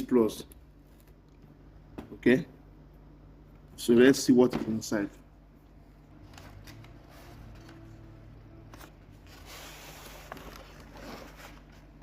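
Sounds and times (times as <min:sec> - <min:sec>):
steady low hum: 0:00.0 - 0:12.0
packaging rustling: 0:06.2 - 0:12.0.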